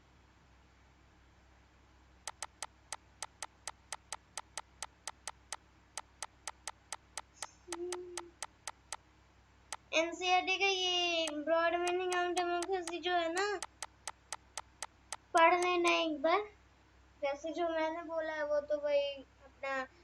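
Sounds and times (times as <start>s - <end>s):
rapid sharp clicks: 2.3s - 9.0s, 9.7s - 9.9s, 11.2s - 15.9s.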